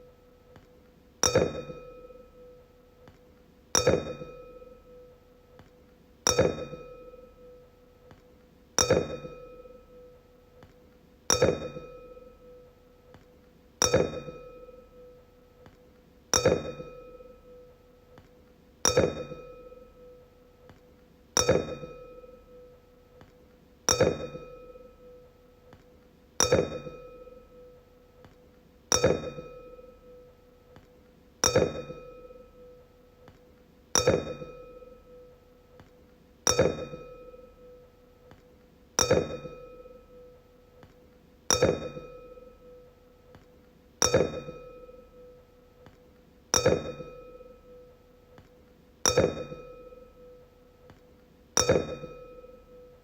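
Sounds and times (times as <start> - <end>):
wine glass clinking and ringing: 26.4 - 27.5, 49.1 - 50.3, 51.6 - 52.9.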